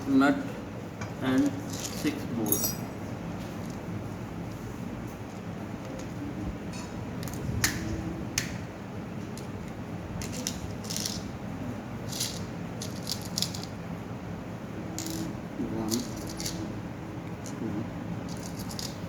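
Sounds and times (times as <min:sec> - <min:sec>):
metal nuts and bolts clinking: 0:01.7 - 0:03.0.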